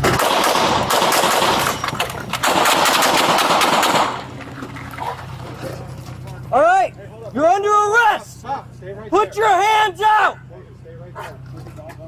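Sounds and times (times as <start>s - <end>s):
gunshots in rapid succession: 0.0s - 1.8s, 2.4s - 4.4s.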